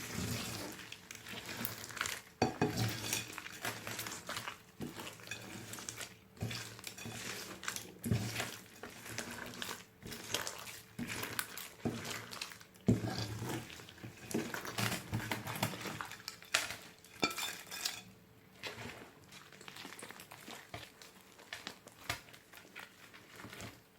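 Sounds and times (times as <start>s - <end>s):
slime squelching and popping: 18.6s - 23.8s.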